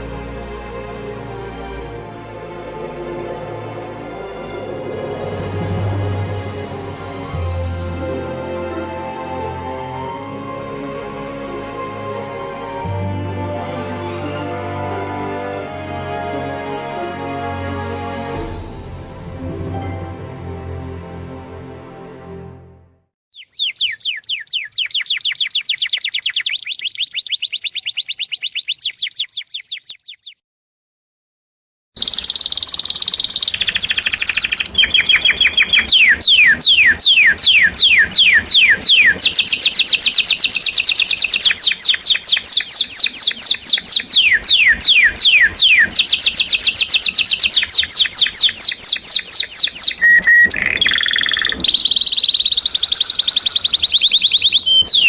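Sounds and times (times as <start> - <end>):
bird chirps sliding downward: 23.4 - 30.4, 32.0 - 55.0.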